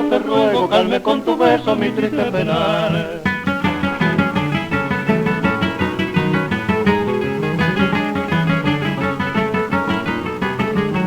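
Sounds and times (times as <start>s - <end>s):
guitars plucking and strumming: 0.0s - 11.0s.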